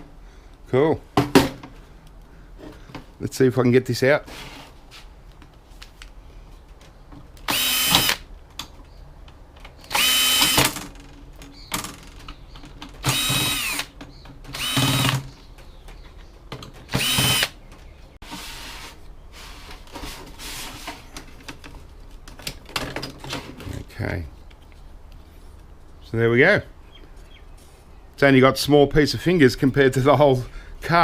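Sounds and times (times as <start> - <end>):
cordless drill spinning: 7.5 - 8.3, 9.9 - 10.8, 13.0 - 13.9, 14.5 - 15.2, 16.9 - 17.6.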